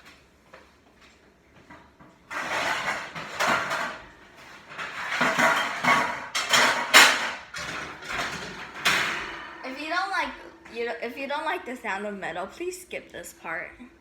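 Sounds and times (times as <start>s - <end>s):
metal pans clattering: 1.7s - 10.8s
metal baking pans scraping: 1.8s - 11.6s.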